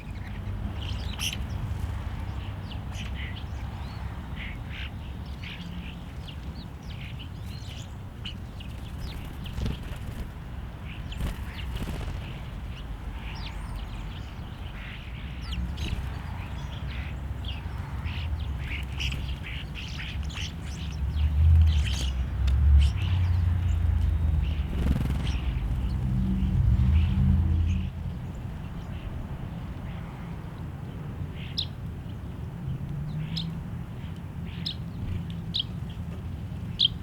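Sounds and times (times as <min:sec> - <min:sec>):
songbirds chirping: 0:00.0 - 0:37.0.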